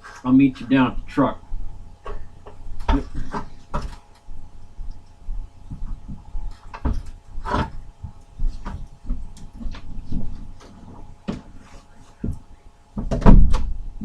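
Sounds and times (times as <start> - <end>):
steady hum: 0.0 - 14.0
irregular thumps and knocks: 2.0 - 4.2, 5.3 - 12.4, 13.0 - 13.8.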